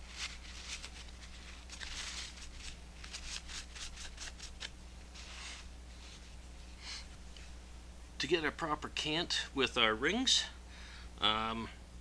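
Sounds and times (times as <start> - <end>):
hands rustling and rubbing material: 0.0 - 7.6
steady low hum: 0.0 - 12.0.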